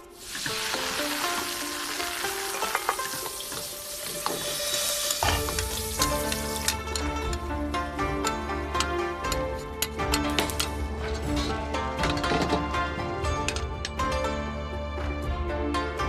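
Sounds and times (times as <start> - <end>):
food frying sizzle: 0.0 - 6.8
background music with deep bass: 4.0 - 16.0.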